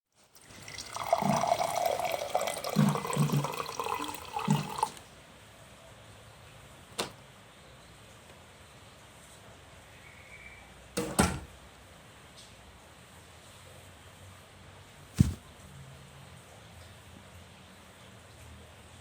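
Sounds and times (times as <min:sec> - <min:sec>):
water running and splashing: 0:00.4 - 0:05.0
low thuds: 0:15.2 - 0:15.4.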